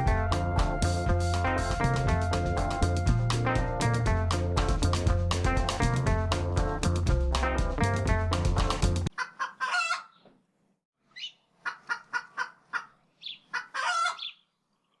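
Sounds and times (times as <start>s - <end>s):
music: 0.0s - 9.1s
clucking animal calls: 9.1s - 10.3s, 11.2s - 14.4s.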